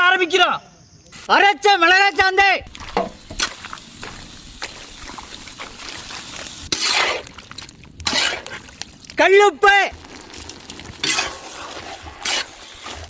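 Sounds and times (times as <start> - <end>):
steady low hiss: 0.0 - 13.0
ingredients pouring into pot: 9.9 - 13.0.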